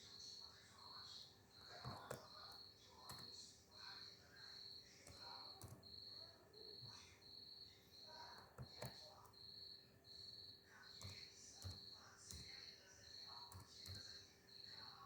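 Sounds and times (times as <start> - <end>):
soft clicks: 11.0 - 12.6.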